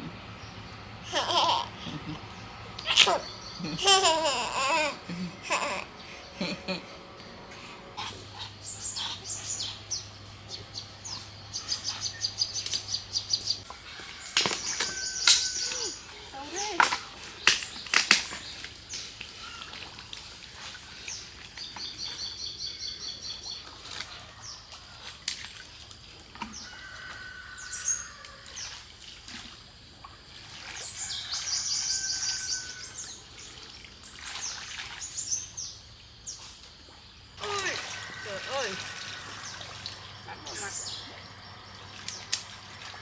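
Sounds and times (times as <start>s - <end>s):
small birds chirping: 0.0s - 24.6s, 30.6s - 43.0s
high bird trills: 14.2s - 16.8s.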